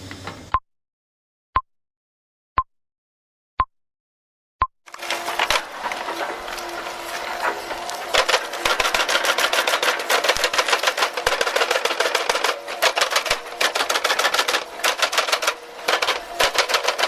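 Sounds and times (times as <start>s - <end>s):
machine noise: 4.9s - 17.0s
mechanical clatter with rapid clicks: 4.9s - 17.0s.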